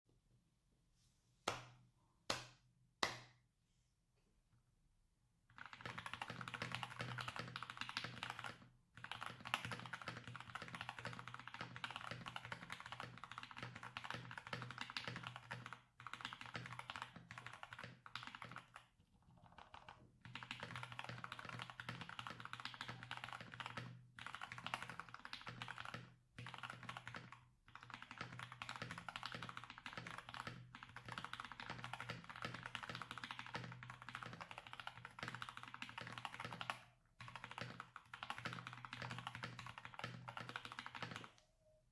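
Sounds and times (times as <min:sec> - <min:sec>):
mechanical keyboard typing: 0:05.5 - 0:41.4.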